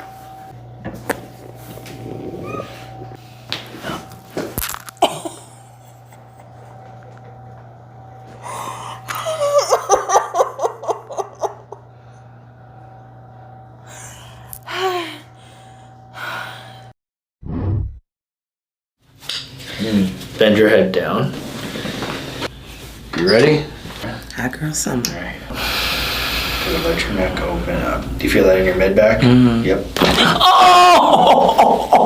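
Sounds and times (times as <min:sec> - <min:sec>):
steady low hum: 0:00.0 - 0:16.9, 0:19.4 - 0:32.0
person exclaiming oh: 0:30.2 - 0:31.2.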